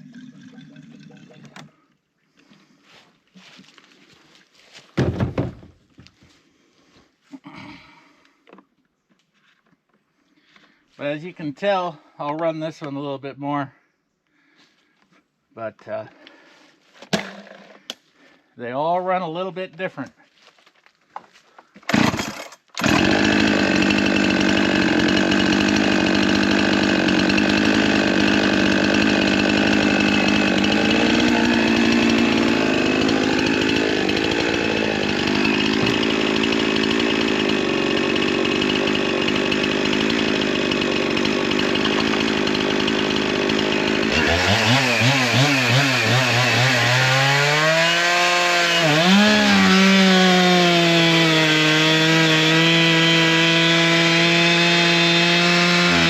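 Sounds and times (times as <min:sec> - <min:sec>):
chainsaw running at high revs: 0:21.9 - 0:56.0.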